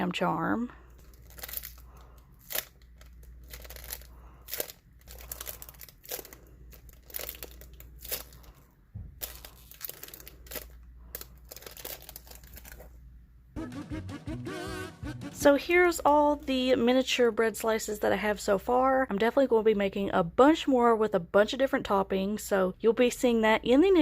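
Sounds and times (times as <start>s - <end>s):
squishy toy crinkling: 0.9s - 13.1s.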